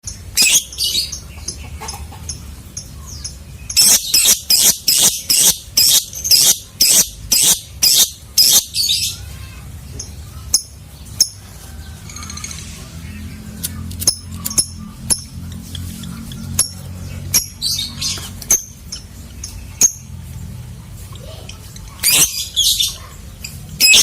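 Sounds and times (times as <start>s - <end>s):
bird shrill chirps: 3.7s - 9.2s, 23.8s - 24.0s.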